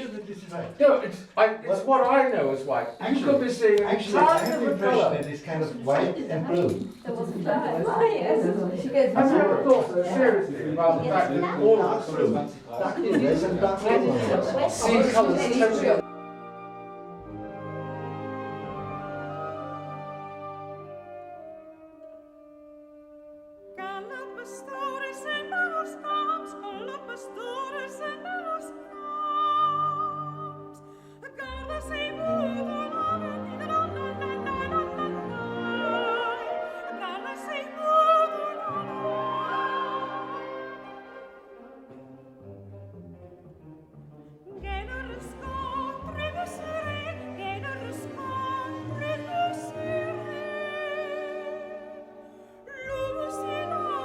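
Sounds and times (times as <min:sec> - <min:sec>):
instrumental accompaniment: 0:03.0 - 0:54.0
orchestra playing: 0:07.8 - 0:54.0
operatic singing: 0:23.8 - 0:42.0, 0:44.5 - 0:54.0.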